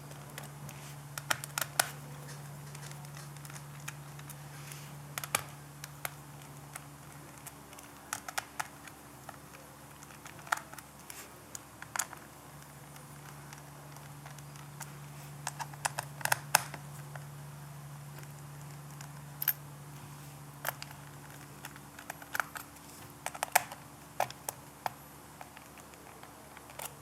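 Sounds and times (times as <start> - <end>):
steady low hum: 0.0 - 27.0.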